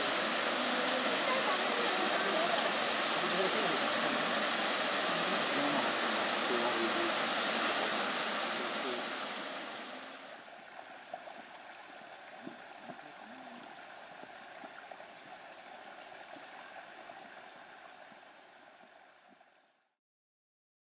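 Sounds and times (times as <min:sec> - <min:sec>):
waterfall rushing: 0:00.0 - 0:10.7.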